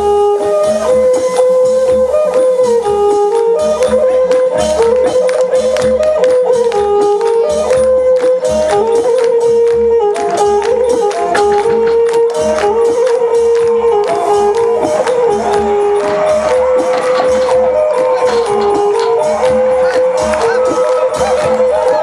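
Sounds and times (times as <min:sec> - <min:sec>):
melody of long held notes: 0:00.0 - 0:22.0
jingling hand percussion: 0:00.4 - 0:22.0
low drum beat: 0:09.9 - 0:22.0.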